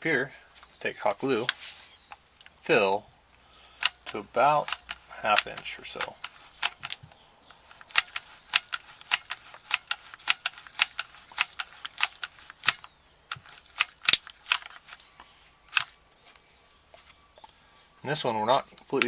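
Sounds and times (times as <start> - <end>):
glue gun trigger clicking: 3.8 - 7.0, 7.8 - 14.8.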